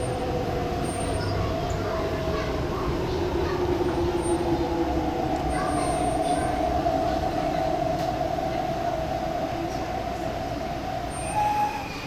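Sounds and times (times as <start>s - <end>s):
wheel and rail rumble: 0.0s - 12.0s
train motor whine: 5.4s - 12.0s.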